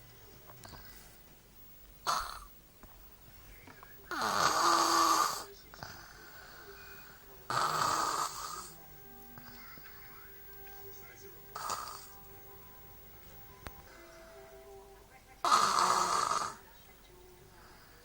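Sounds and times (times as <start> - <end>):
person snoring: 4.1 - 8.8, 11.5 - 12.2, 15.4 - 16.6.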